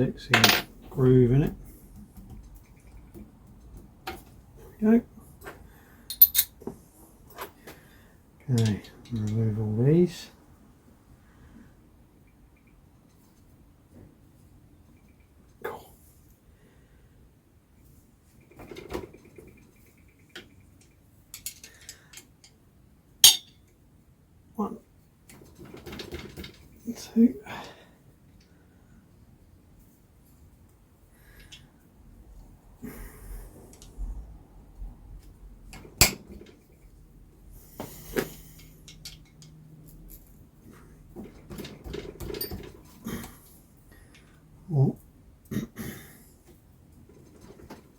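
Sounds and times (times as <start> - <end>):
metal tools clinking: 0.3 - 0.7, 6.1 - 6.5, 23.2 - 23.6.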